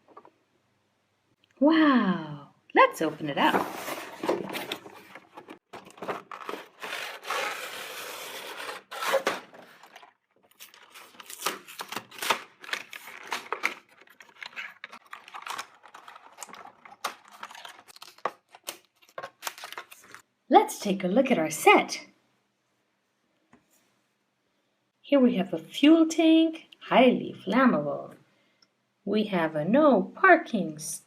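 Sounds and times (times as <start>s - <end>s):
clicks and rustles of handling: 3.4s - 7.4s, 8.7s - 20.2s
cardboard and plastic tearing: 3.4s - 20.2s.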